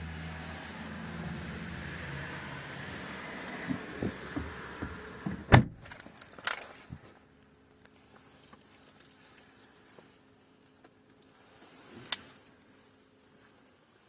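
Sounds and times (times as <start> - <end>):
heavy thump: 3.6 - 5.8.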